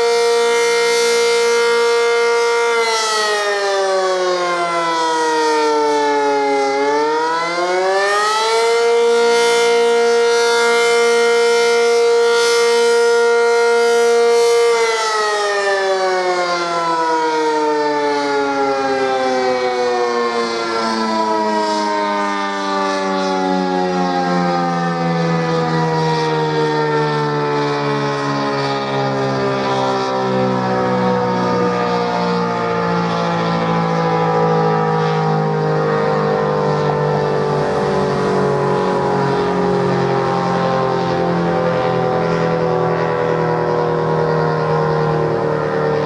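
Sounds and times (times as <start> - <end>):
warning siren wailing: 0.0 - 46.0.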